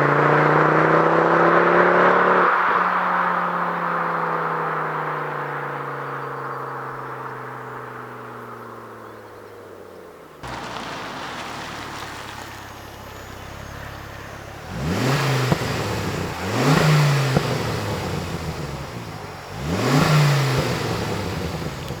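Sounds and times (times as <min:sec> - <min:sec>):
car engine idling and revving: 0:00.0 - 0:22.0.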